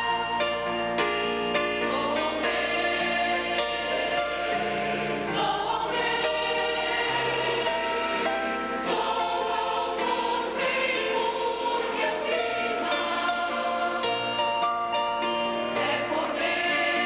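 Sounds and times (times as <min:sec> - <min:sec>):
choir singing in harmony: 0:00.0 - 0:17.0.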